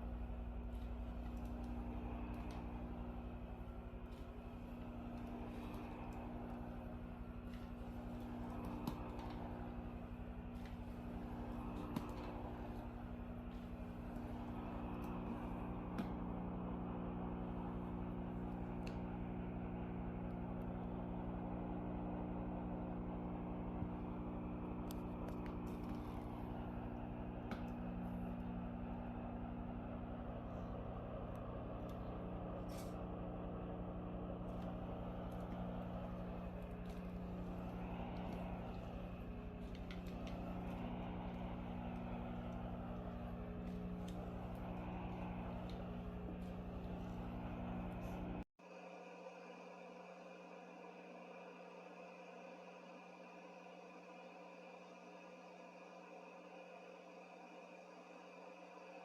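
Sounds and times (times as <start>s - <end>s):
faint clicks: 0.0s - 16.6s
steam mop pump buzzing: 0.0s - 48.4s
soft shifting noise: 0.0s - 48.5s.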